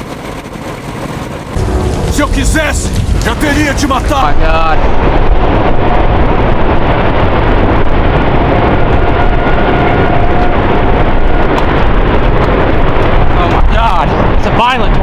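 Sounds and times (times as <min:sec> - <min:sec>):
tornado roaring: 0:00.0 - 0:15.0
wind buffeting microphone: 0:00.0 - 0:15.0.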